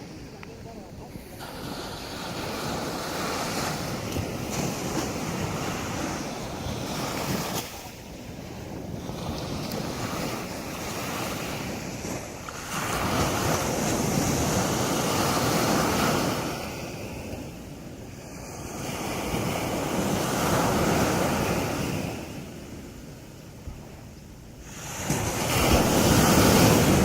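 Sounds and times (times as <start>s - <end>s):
sea waves breaking on beach: 0.0s - 27.0s.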